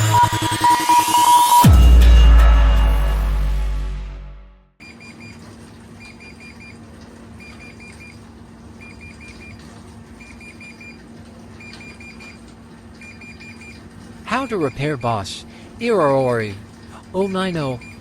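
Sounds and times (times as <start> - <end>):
dryer beeping alarm: 0.0 - 2.3, 4.8 - 18.0
intro music: 0.0 - 4.7
low electrical hum: 4.8 - 18.0.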